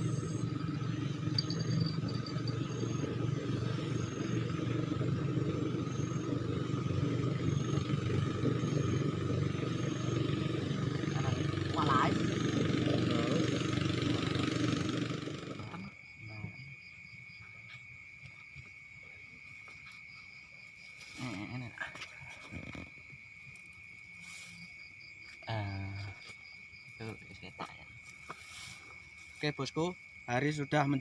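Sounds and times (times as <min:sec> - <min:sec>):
loud vehicle engine running: 0:00.0 - 0:15.9
insects droning: 0:00.0 - 0:31.0.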